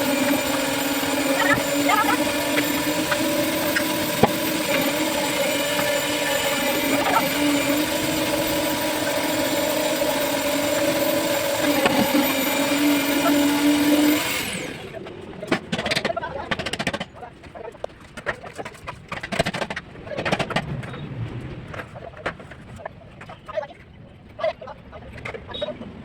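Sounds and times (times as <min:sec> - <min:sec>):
engine humming: 0:00.0 - 0:15.7.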